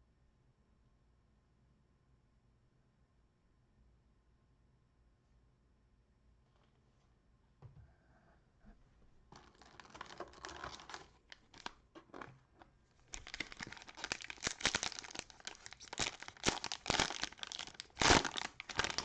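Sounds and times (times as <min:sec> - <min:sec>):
cellophane wrapper tearing and crinkling: 0:09.3 - 0:12.3, 0:13.0 - 0:19.0.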